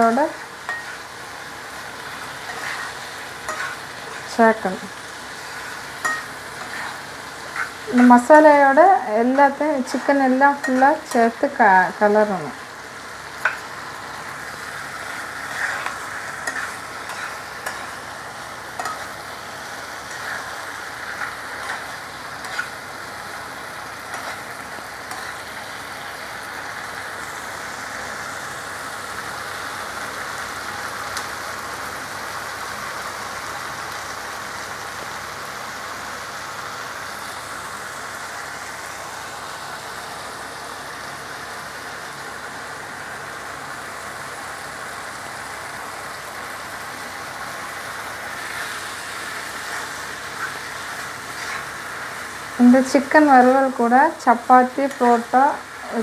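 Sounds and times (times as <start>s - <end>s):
chicken frying in a pan: 0.0s - 56.0s
spatula scraping a pan: 0.7s - 1.1s, 2.3s - 4.3s, 5.4s - 8.2s, 13.4s - 13.7s, 14.5s - 19.2s, 20.0s - 22.9s, 24.1s - 25.5s, 48.4s - 52.5s.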